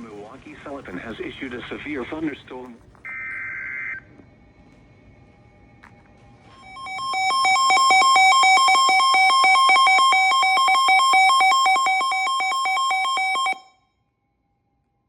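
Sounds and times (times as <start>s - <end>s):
two-pitch electronic alert warble: 6.6s - 13.7s.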